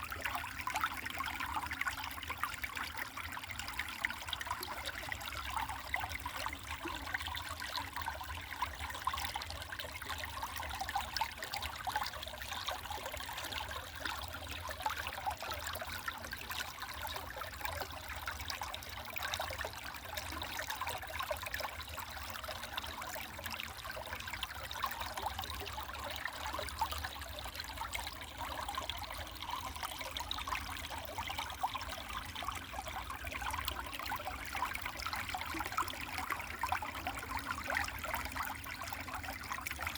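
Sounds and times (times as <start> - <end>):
stream babbling over rocks: 20.5 - 39.9.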